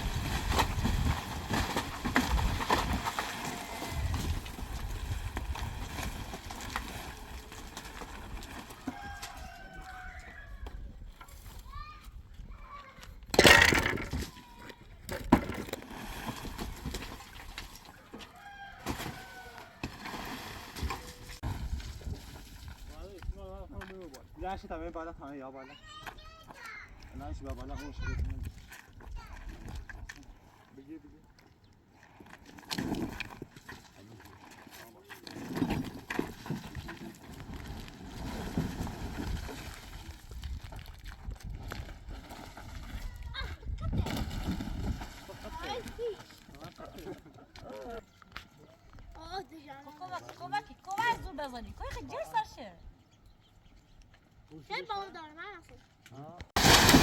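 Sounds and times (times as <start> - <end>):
wind rumbling on microphone: 0.0 - 11.5, 21.1 - 23.8, 37.4 - 45.7
loud crash of something breaking: 56.6 - 57.0.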